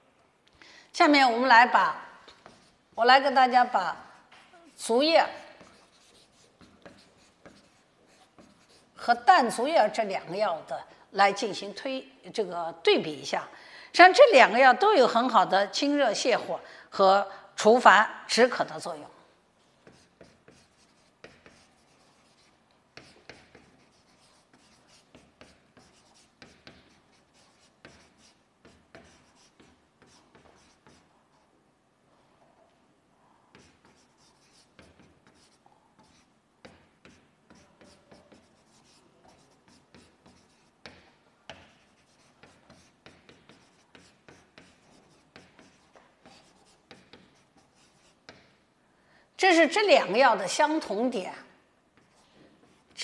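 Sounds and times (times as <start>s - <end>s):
pen writing strokes: 2.3s - 2.8s, 4.7s - 9.0s, 19.8s - 31.5s, 33.5s - 48.6s.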